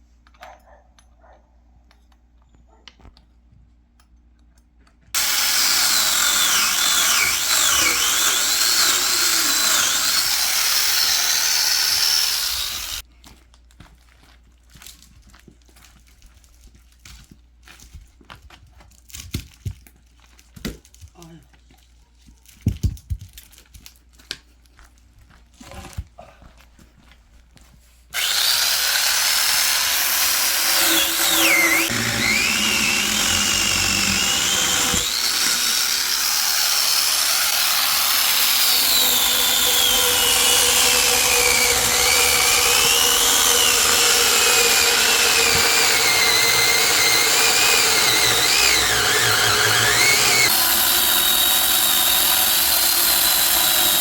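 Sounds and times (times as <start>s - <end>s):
chainsaw cutting wood: 5.2s - 13.0s, 28.2s - 54.0s.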